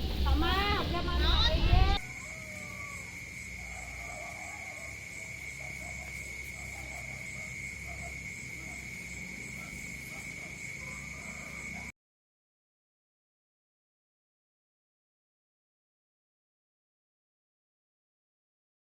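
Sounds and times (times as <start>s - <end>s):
frogs croaking: 0.0s - 11.9s
insect trilling: 0.1s - 11.9s.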